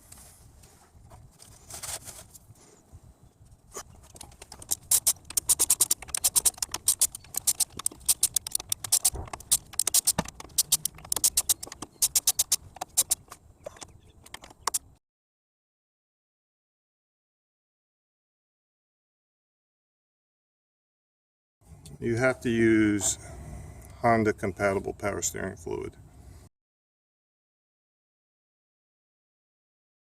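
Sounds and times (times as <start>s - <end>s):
ratcheting wrench clicking: 4.2s - 13.2s.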